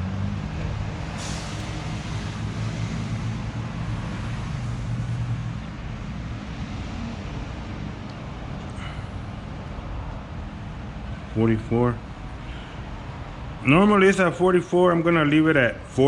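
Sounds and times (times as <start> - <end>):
vehicle engine droning: 0.0 - 16.0
short hiss: 1.2 - 1.8.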